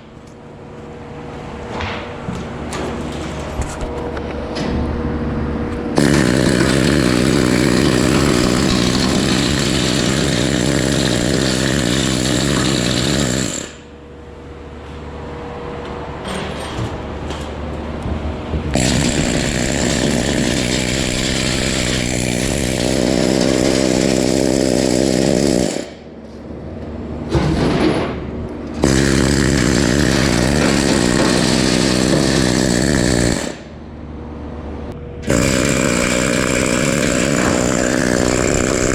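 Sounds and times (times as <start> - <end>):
needle scaler chattering on metal: 6.0 - 13.8.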